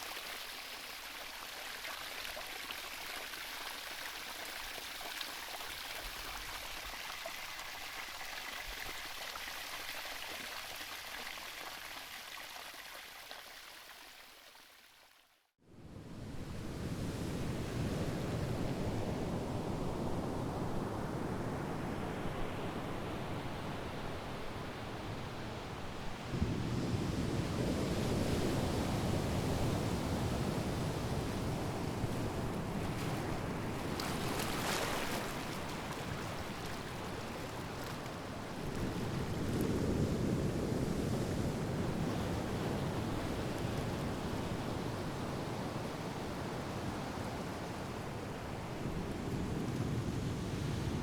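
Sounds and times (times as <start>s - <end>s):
sea waves washing ashore: 15.9s - 51.0s.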